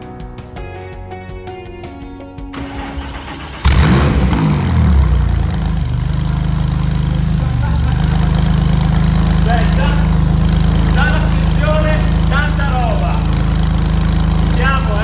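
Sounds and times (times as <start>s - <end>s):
car engine starting and idling: 2.5s - 15.0s.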